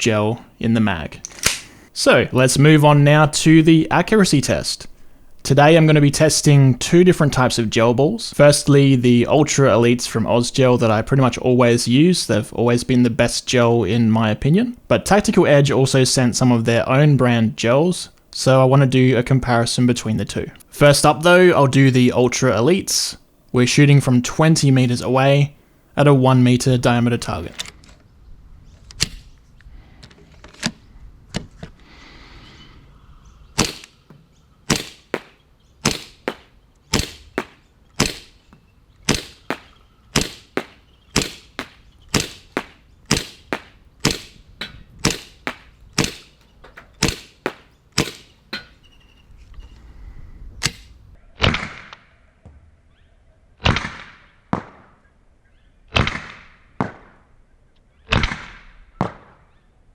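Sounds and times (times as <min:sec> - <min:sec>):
gel blaster pistol shots: 0:33.6 - 0:34.0, 0:34.7 - 0:38.4, 0:39.1 - 0:44.4, 0:45.0 - 0:46.4, 0:47.0 - 0:48.3, 0:58.1 - 0:59.4.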